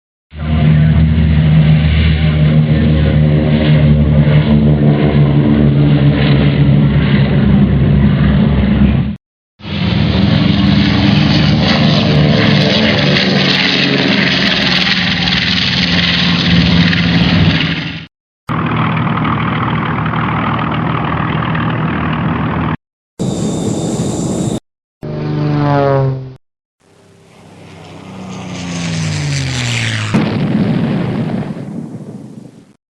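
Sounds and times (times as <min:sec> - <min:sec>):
airplane engine drone: 0:00.3 - 0:32.8
engine burst with high whine: 0:09.6 - 0:31.3.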